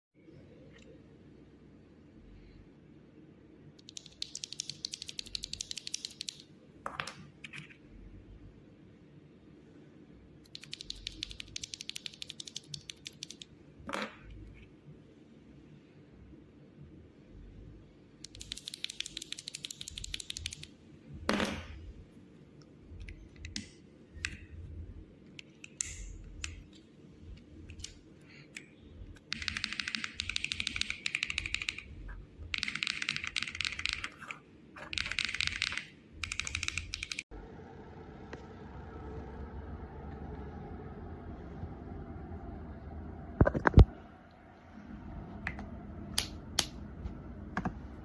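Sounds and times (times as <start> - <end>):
typing on mechanical keyboard: 3.8 - 6.5, 10.5 - 13.5, 18.2 - 20.7, 29.2 - 37.3.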